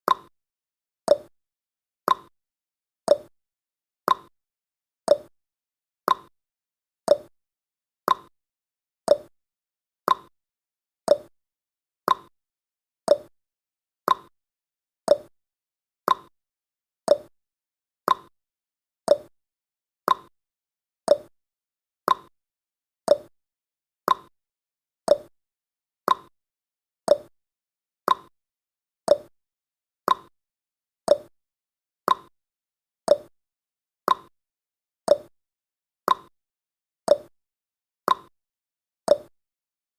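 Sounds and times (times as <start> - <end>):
timer ticking: 0.1 - 0.3, 1.1 - 1.3, 2.1 - 2.3, 3.1 - 3.3, 4.1 - 4.3, 5.1 - 5.3, 6.1 - 6.3, 7.1 - 7.3, 8.1 - 8.3, 9.1 - 9.3, 10.1 - 10.3, 11.1 - 11.3, 12.1 - 12.3, 13.1 - 13.3, 14.1 - 14.3, 15.1 - 15.3, 16.1 - 16.3, 17.1 - 17.3, 18.1 - 18.3, 19.1 - 19.3, 20.1 - 20.3, 21.1 - 21.3, 22.1 - 22.3, 23.1 - 23.3, 24.1 - 24.3, 25.1 - 25.3, 27.1 - 27.3, 29.1 - 29.3, 31.1 - 31.3, 33.1 - 33.3, 35.1 - 35.3, 37.1 - 37.3, 39.1 - 39.3.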